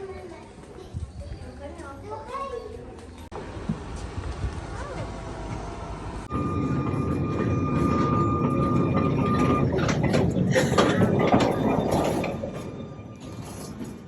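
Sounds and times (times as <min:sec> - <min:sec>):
electric tram rumbling and whining: 0:03.4 - 0:14.0
tram wheel squeaks and clatter: 0:04.8 - 0:14.0.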